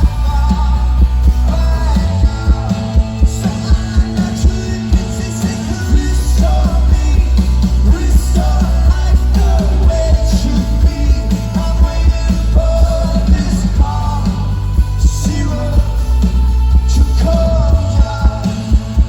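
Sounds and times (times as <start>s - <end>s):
person singing: 0.0s - 19.0s
rock band playing live: 0.0s - 19.0s.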